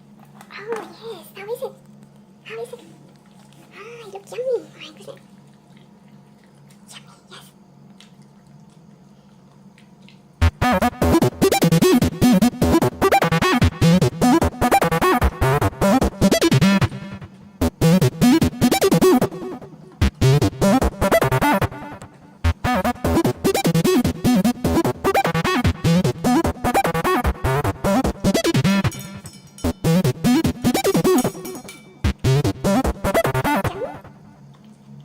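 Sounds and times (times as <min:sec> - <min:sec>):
upbeat background music: 0:10.4 - 0:34.2.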